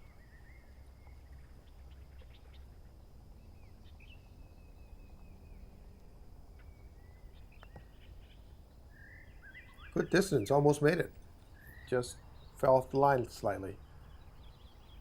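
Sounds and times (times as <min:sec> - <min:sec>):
birds chirping and calling: 0:00.0 - 0:15.0.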